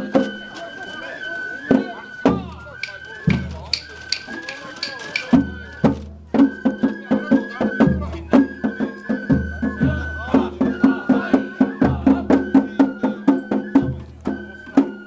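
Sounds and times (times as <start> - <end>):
high flute: 0.0 - 15.0
sharp percussion strikes: 2.3 - 5.6.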